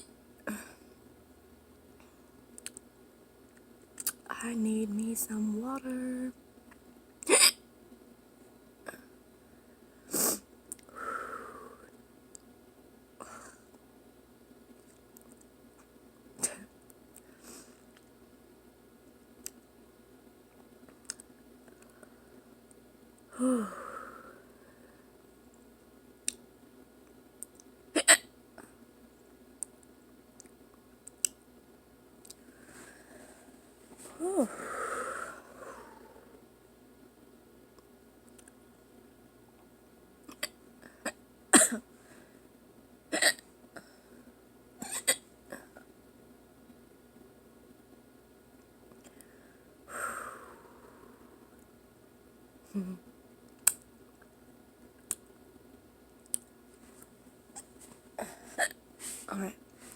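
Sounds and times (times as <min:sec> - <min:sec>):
woman hiccuping: 0:07.2 - 0:07.6, 0:28.0 - 0:28.3, 0:40.3 - 0:41.8, 0:43.1 - 0:43.4, 0:44.8 - 0:45.8, 0:58.2 - 0:58.8.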